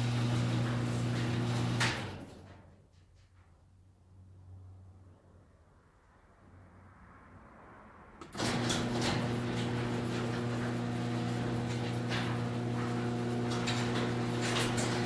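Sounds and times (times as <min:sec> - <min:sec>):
garage door motor hum: 0:00.0 - 0:02.7, 0:08.2 - 0:15.0
chain and track rattling: 0:08.4 - 0:15.0.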